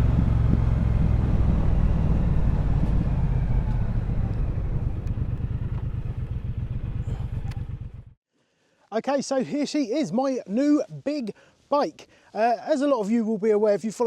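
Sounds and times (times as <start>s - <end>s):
motorcycle engine running at low revs: 0.0s - 8.2s.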